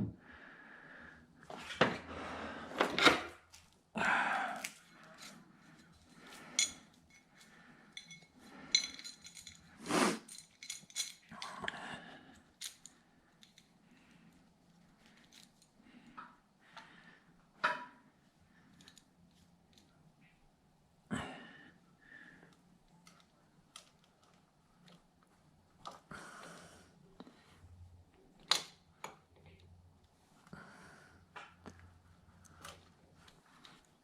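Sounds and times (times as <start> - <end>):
metallic clinks of hand tools: 8.0 - 9.7, 10.3 - 11.3.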